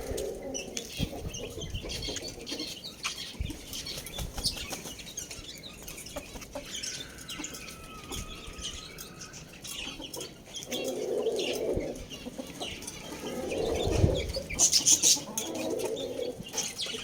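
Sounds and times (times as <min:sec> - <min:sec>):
chickens clucking: 0:00.0 - 0:17.0
rooster crowing: 0:06.8 - 0:09.5.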